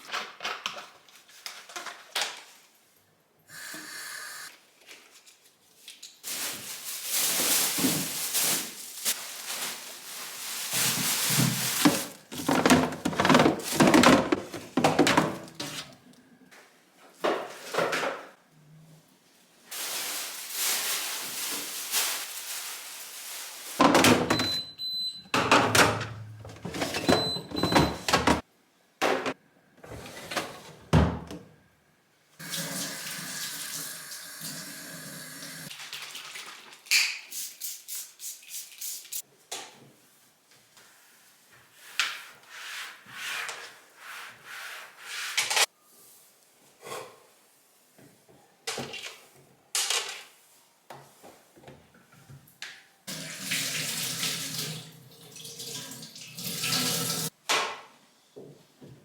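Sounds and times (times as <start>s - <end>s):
objects knocking and clattering: 10.8s - 15.8s.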